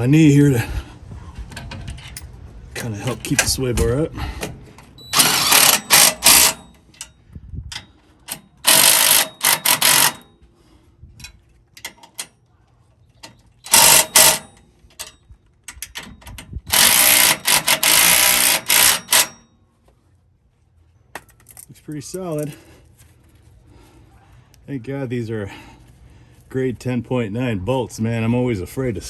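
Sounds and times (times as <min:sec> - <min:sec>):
metal clicks and clanks: 0:01.5 - 0:10.3, 0:11.2 - 0:19.6
power tool tightening bolts: 0:02.8 - 0:07.1, 0:07.7 - 0:10.3, 0:13.3 - 0:19.5.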